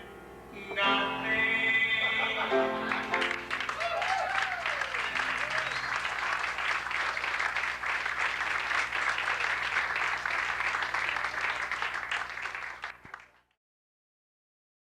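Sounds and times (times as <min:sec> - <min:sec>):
audience applauding: 0:02.0 - 0:13.6.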